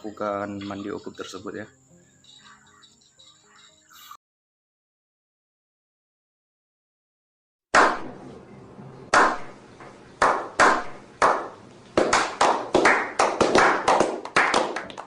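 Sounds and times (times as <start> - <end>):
sharp claps or knocks: 7.7 - 8.2, 9.1 - 15.0.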